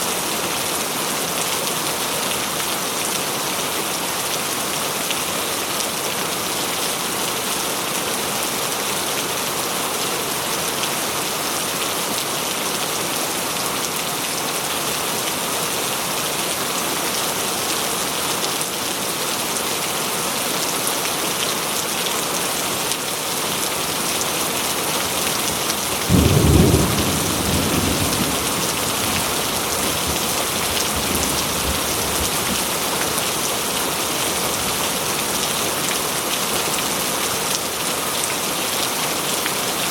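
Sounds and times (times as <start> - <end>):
heavy rain pouring: 0.0 - 39.9
thunder rumbling: 26.1 - 32.4.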